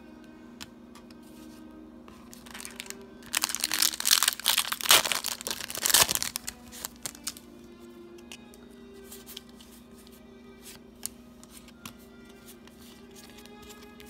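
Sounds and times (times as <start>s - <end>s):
foil wrapper tearing and crinkling: 2.3s - 7.4s.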